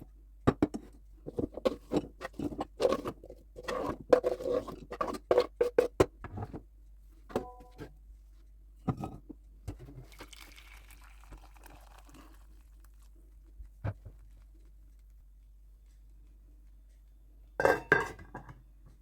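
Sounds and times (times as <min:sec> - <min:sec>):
kitchenware taps and knocks: 0:00.5 - 0:02.6, 0:07.3 - 0:07.9, 0:17.6 - 0:18.6.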